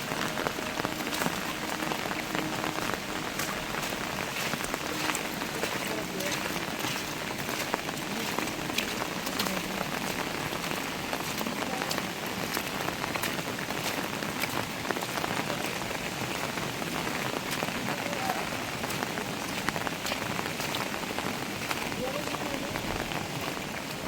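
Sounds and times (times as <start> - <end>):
heavy rain falling: 0.0 - 24.0
raindrops ticking on a surface: 0.0 - 24.0.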